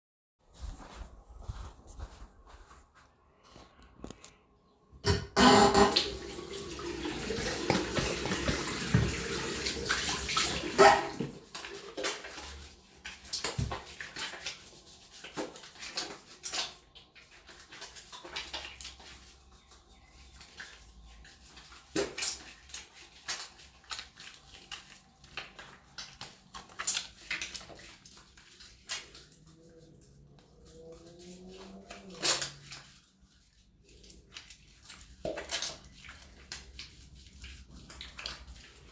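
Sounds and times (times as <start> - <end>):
tap water running into sink: 5.0 - 12.4
hands lathering wet squelches: 5.5 - 38.9.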